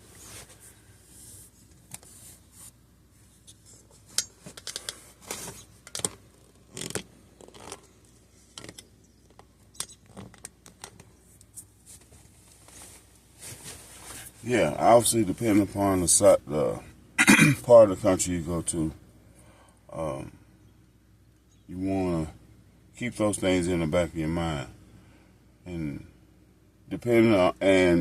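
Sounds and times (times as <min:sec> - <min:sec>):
handling clicks and rustles: 0:00.0 - 0:14.5.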